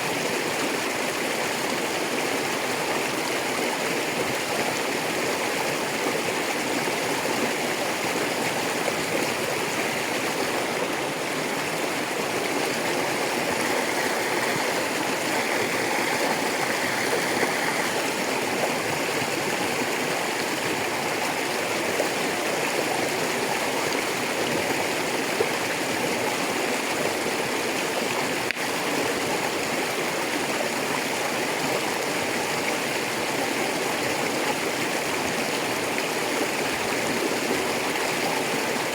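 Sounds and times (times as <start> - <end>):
river rushing over stones: 0.0 - 38.9.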